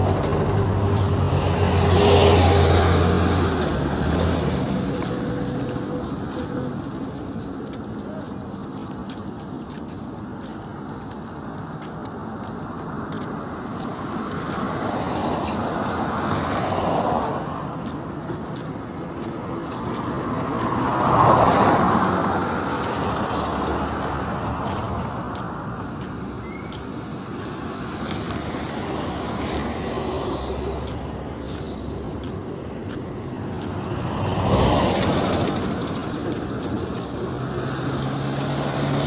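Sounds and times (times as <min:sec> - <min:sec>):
motor vehicles passing: 0:00.0 - 0:39.0.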